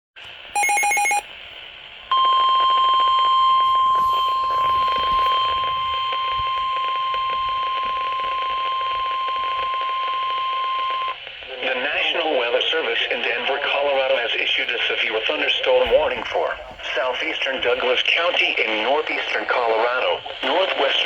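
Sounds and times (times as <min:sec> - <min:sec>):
radio hiss: 0:00.2 - 0:21.0
steady alarm tone: 0:00.6 - 0:01.2, 0:02.1 - 0:11.2.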